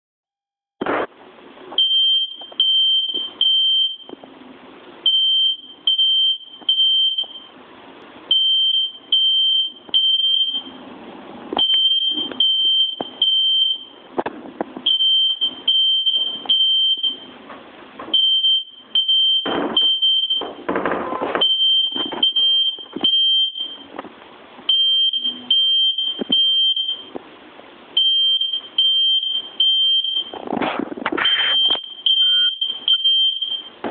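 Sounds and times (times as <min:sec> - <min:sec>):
smoke alarm beeping: 0:01.8 - 0:04.2, 0:05.0 - 0:07.5, 0:08.3 - 0:10.8, 0:11.6 - 0:14.1, 0:14.8 - 0:17.4, 0:18.1 - 0:20.7, 0:21.4 - 0:23.9, 0:24.7 - 0:27.2, 0:28.0 - 0:30.4, 0:31.2 - 0:33.8.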